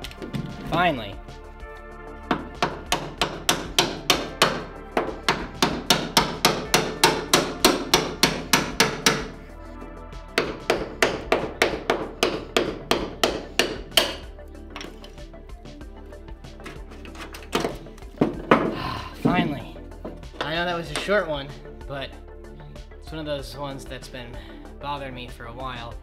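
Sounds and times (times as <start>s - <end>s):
hammer striking steel hinge: 2.3s - 9.4s, 10.4s - 15.2s.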